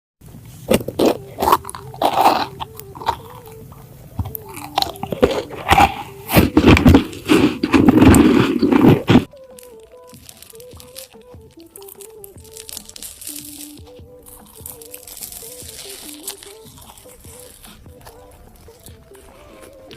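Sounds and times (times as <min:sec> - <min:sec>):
chewing crunchy food: 0:00.5 - 0:19.9.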